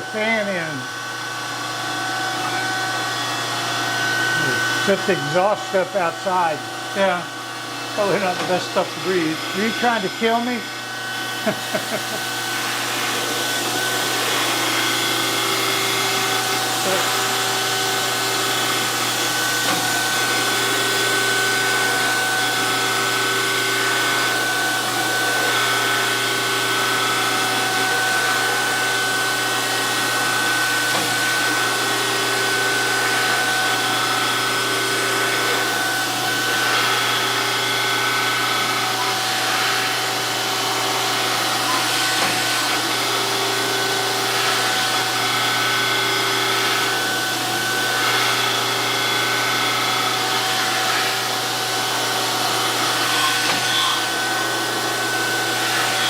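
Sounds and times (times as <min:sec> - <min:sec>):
grinder wheel high tone: 0:00.0 - 0:56.0
constant machine hum: 0:04.4 - 0:17.4.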